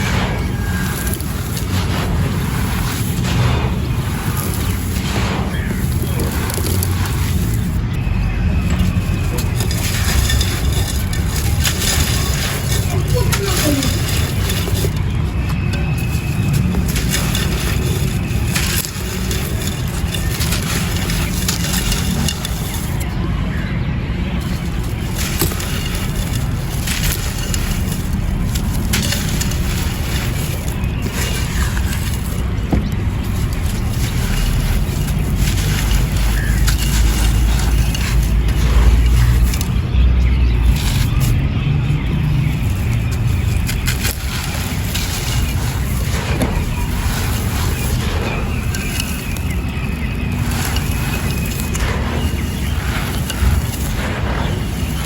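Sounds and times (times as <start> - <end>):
clay pot pieces crunching: 0.0 - 55.0
steady low rumble: 0.0 - 55.0.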